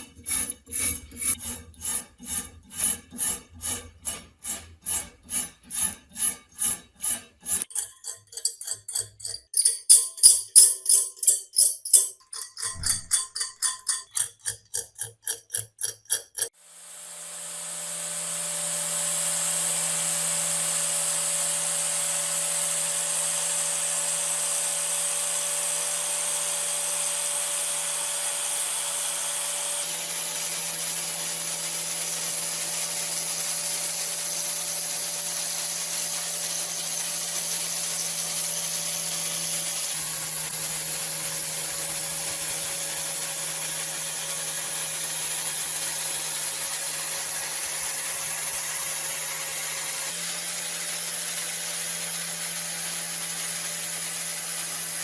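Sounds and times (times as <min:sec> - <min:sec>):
electric power tool running: 0:16.5 - 0:55.0.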